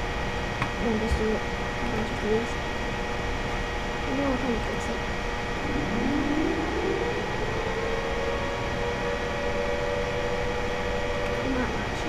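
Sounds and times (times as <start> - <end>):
synthesized warning siren wail: 5.2 - 12.0.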